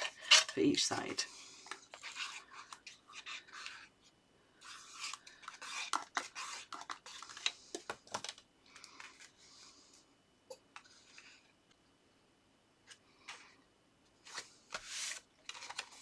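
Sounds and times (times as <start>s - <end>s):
paper rustling and scraping: 1.7s - 3.9s, 4.6s - 8.4s, 14.2s - 16.0s.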